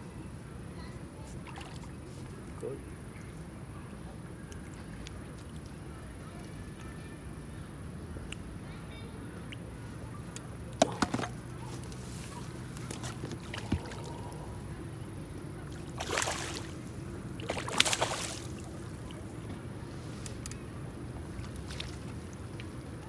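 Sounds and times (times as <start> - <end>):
water splashing: 10.8 - 14.8, 15.6 - 19.7, 20.5 - 23.0.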